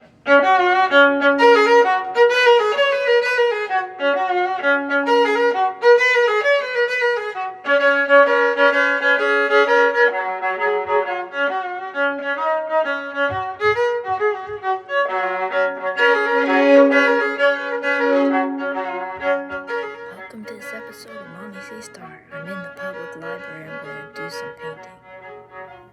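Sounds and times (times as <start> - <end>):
fiddle tune: 0.3 - 25.9
sustained accompanying notes: 16.4 - 19.4, 20.1 - 25.0.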